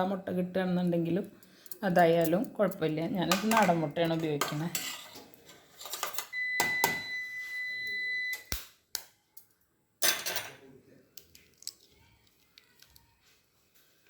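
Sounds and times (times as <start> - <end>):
high-pitched electronic beep: 6.4 - 8.5.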